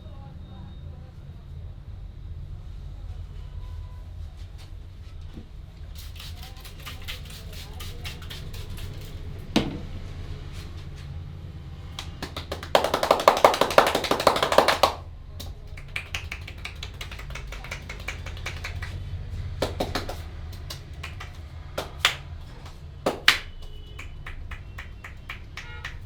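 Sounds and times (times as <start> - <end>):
hands tapping and slapping head: 12.0 - 19.0, 19.6 - 26.0
sharp clicks and snaps: 15.4 - 19.0.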